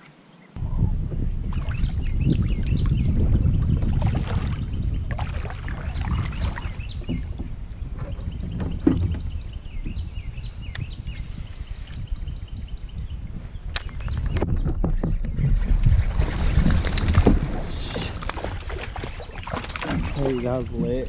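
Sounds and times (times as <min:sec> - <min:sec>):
low rumble: 0:00.6 - 0:11.5.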